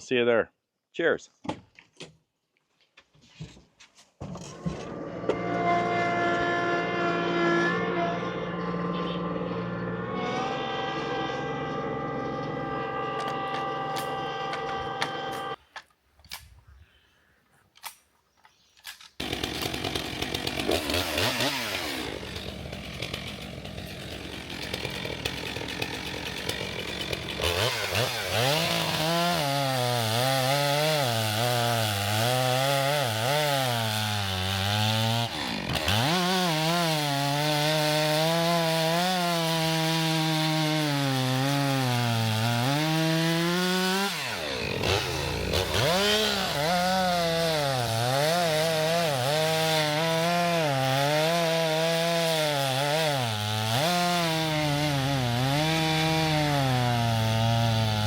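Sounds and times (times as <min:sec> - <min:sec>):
chainsaw cutting log: 0:04.2 - 0:06.7, 0:10.0 - 0:15.6, 0:19.2 - 0:58.0.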